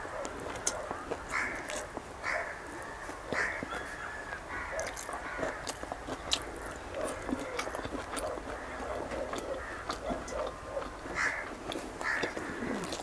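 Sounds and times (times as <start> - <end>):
chewing and biting food: 0.0 - 13.0
mouth and teeth clicks: 4.8 - 13.0.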